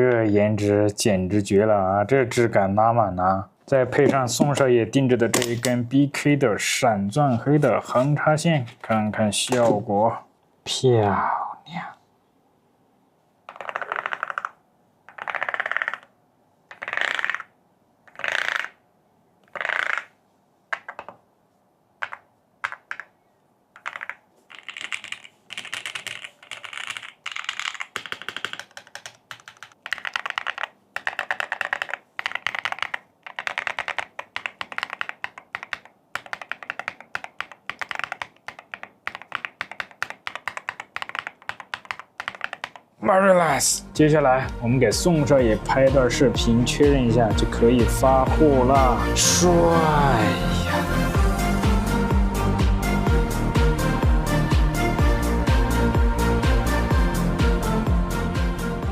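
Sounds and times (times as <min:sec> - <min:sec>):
typing on mechanical keyboard: 0:13.5 - 0:16.1, 0:16.7 - 0:17.5, 0:22.0 - 0:23.1, 0:23.8 - 0:42.9.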